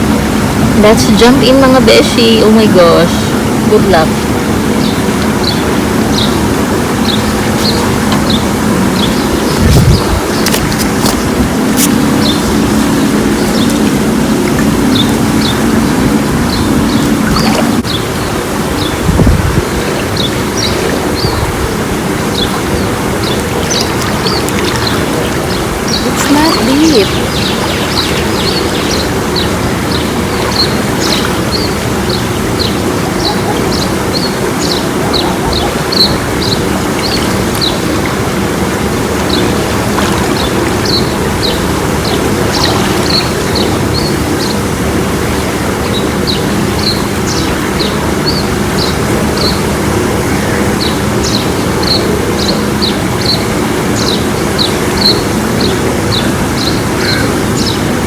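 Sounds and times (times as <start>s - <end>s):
steady rushing noise: 0.0s - 58.0s
small birds chirping: 0.8s - 58.0s.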